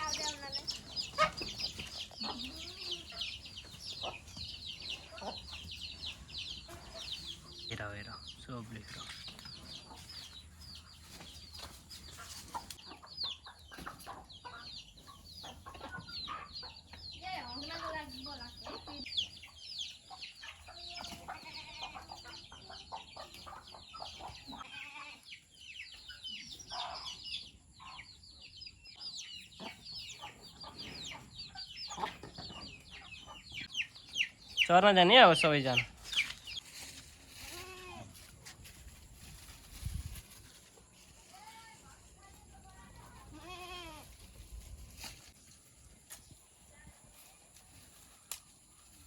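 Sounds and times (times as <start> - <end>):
birds chirping: 0.0 - 37.8
chickens clucking and peeping: 0.0 - 43.3, 44.0 - 49.0.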